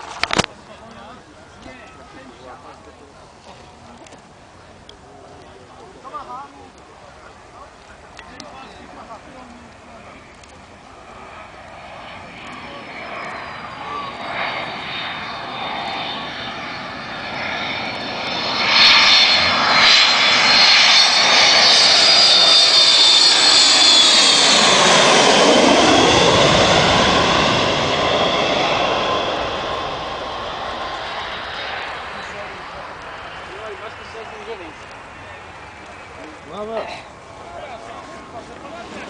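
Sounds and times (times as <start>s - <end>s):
fighter jet passing: 10.9s - 39.0s.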